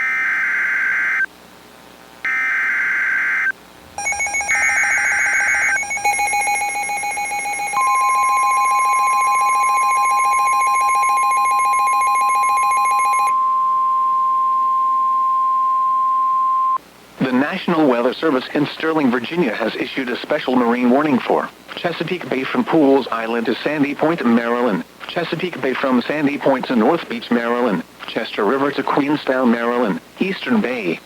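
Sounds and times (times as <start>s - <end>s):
buzzy pulsing alarm tone: 2.3s - 16.8s
steady warning alarm tone: 2.3s - 16.8s
screeching digital data bursts: 2.7s - 13.3s.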